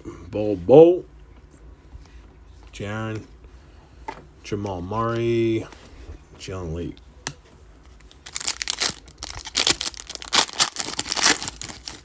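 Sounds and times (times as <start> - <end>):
wrapper crinkling and tearing: 8.2 - 12.0.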